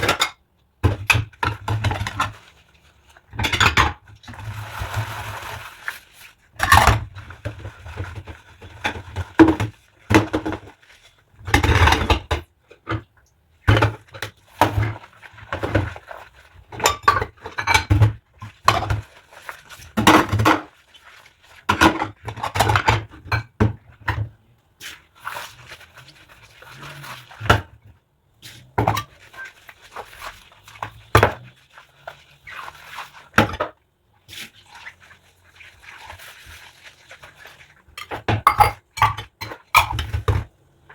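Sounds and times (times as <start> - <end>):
rubber gloves squeaking on dishes: 24.9 - 27.8, 28.5 - 33.7, 34.4 - 40.0
dishes and cutlery clinking: 38.0 - 40.4.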